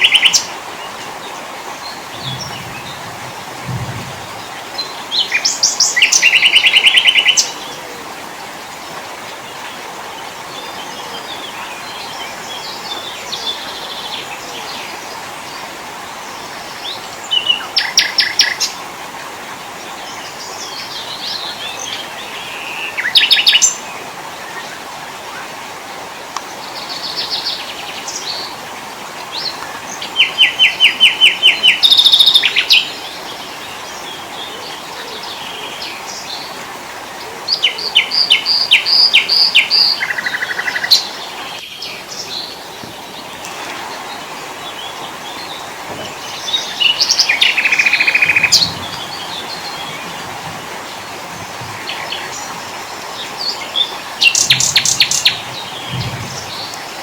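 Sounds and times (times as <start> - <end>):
songbirds trilling and chirping: 0.0 - 8.1, 26.4 - 57.0
steady background hiss: 0.0 - 57.0.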